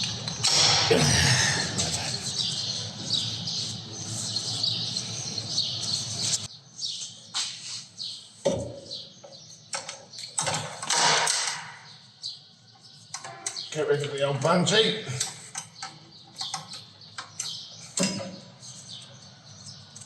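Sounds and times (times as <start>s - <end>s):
birds chirping: 0.1s - 7.2s
steady background hum: 0.9s - 3.2s.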